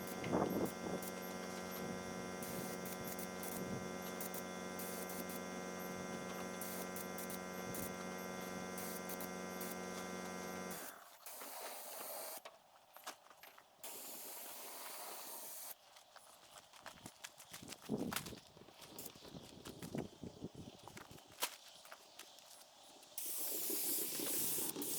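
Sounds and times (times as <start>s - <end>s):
electric motor hum: 0.0s - 12.4s, 23.2s - 24.9s.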